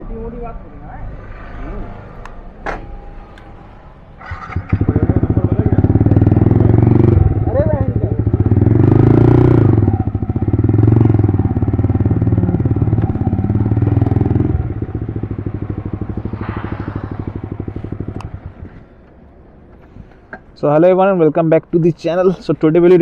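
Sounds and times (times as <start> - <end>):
motorcycle engine running: 4.2 - 19.2.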